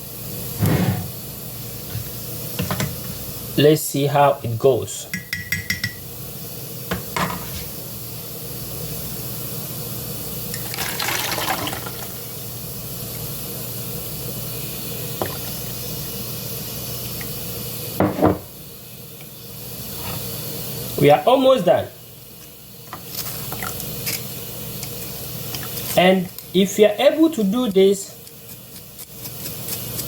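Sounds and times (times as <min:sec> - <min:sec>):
tea pouring into cup: 0:10.6 - 0:12.3.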